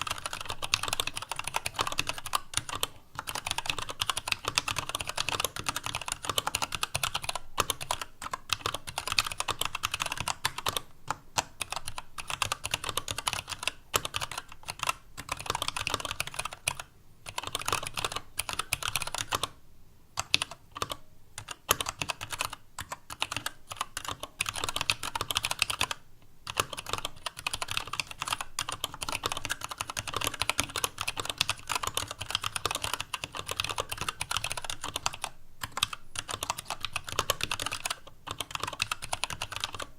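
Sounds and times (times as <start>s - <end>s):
mechanical keyboard typing: 0.0s - 19.6s, 20.2s - 39.9s.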